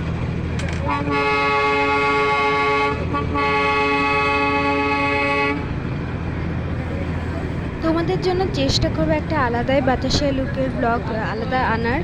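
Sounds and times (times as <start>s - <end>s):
steady low rumble: 5.6s - 12.0s.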